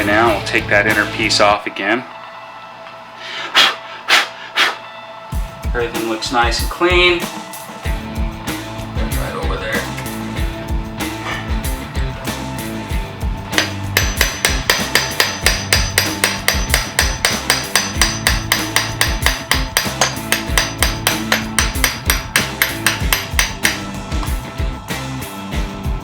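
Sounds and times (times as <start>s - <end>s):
hammer tapping a seal driver: 13.6s - 23.9s.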